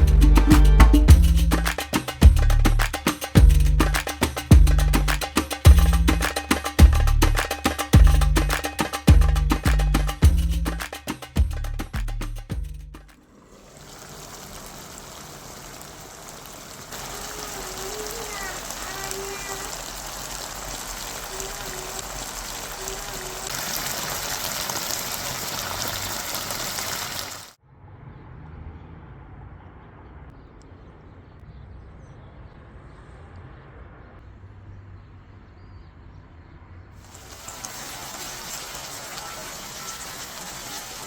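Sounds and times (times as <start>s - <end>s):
stew sizzling in a pot: 13.3s - 27.6s, 37.0s - 41.0s.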